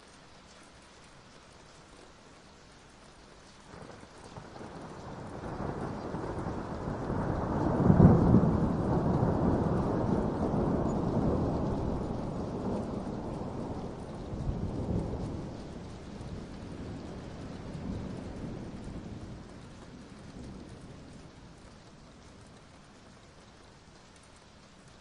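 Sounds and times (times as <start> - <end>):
rolling thunder: 3.7 - 23.1.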